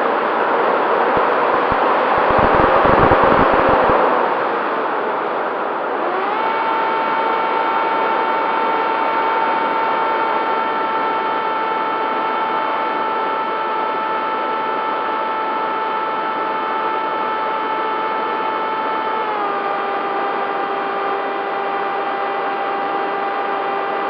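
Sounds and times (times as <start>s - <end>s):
electric motor and propeller whine: 0.0s - 24.0s
wind rush: 1.2s - 4.1s.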